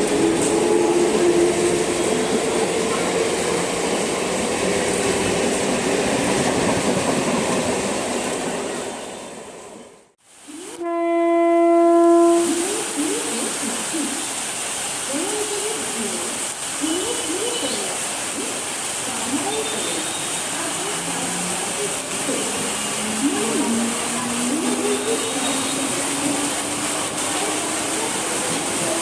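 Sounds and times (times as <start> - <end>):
train rushing through station: 0.0 - 29.0
train horn blast: 10.6 - 12.9.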